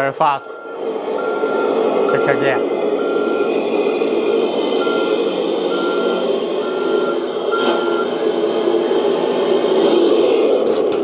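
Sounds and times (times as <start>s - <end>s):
reversing beeper: 0.4s - 8.3s
toy truck engine hum: 0.6s - 11.0s.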